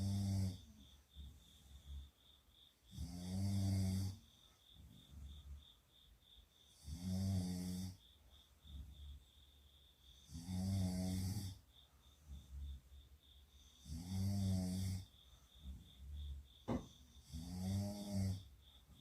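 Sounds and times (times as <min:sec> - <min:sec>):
person snoring: 0:00.0 - 0:00.7, 0:02.9 - 0:04.2, 0:06.8 - 0:08.0, 0:10.2 - 0:11.6, 0:13.8 - 0:15.1, 0:17.2 - 0:18.5
faint breaths: 0:11.4 - 0:14.0, 0:14.8 - 0:17.4.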